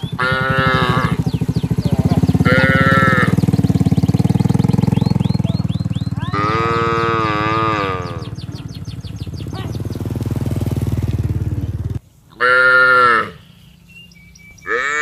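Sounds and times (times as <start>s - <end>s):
small engine puttering: 0.0s - 12.0s
cattle mooing: 0.1s - 1.3s, 2.4s - 3.5s, 6.2s - 8.4s, 12.4s - 13.4s, 14.7s - 15.0s.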